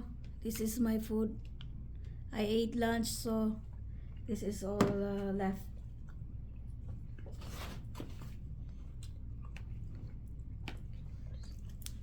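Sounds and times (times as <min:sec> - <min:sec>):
steady low hum: 0:00.0 - 0:12.0
chewing with small crackles: 0:01.3 - 0:02.3, 0:05.6 - 0:07.4, 0:08.3 - 0:12.0.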